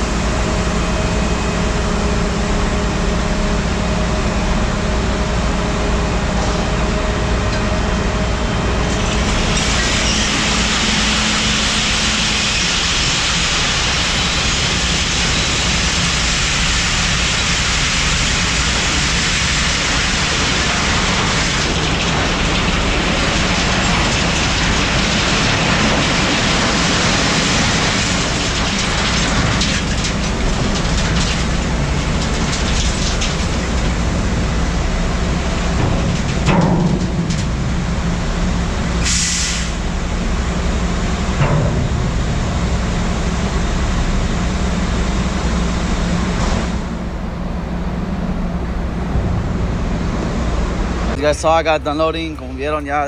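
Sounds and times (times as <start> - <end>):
diesel truck engine running: 0.0 - 53.0
loud steady rushing hiss: 9.0 - 35.7, 48.4 - 53.0.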